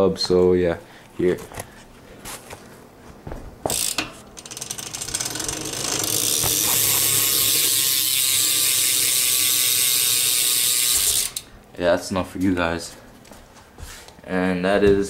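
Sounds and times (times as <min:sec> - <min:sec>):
bike hub ratcheting buzz: 0:03.7 - 0:11.5.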